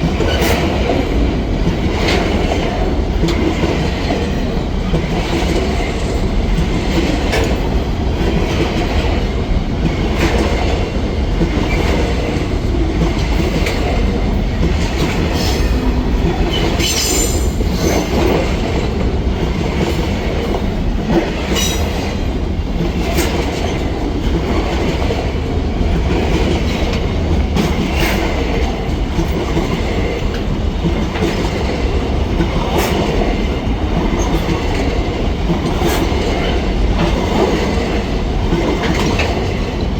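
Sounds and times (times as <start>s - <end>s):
train wheels rumbling and clicking: 0.0s - 39.9s.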